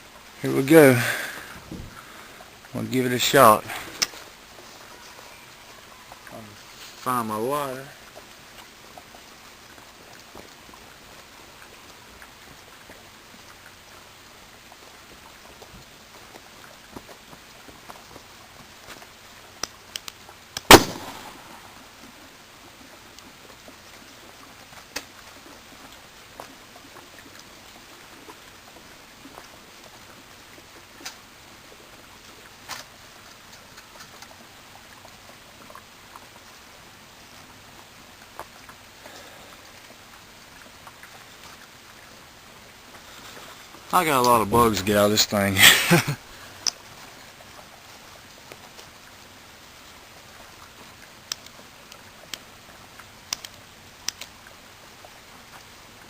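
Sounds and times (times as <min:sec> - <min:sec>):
small pops: 0:19.6 - 0:21.6, 0:51.2 - 0:52.5, 0:53.3 - 0:54.4.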